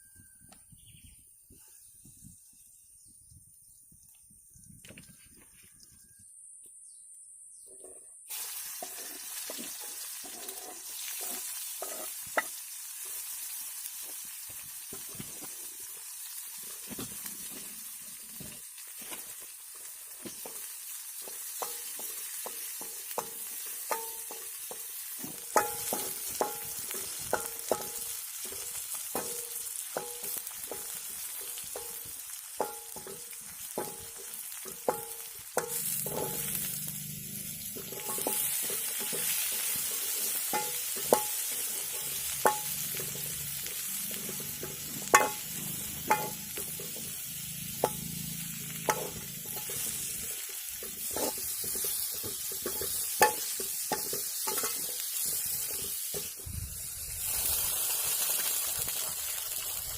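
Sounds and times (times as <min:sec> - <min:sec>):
food sizzling in a pan: 0:08.3 - 0:59.9.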